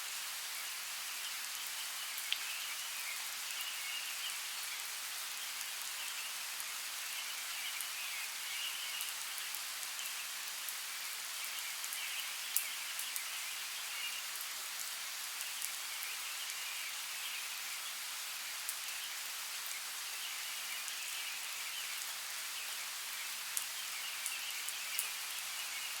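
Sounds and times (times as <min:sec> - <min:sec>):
steady rain in forest: 0:00.0 - 0:26.0.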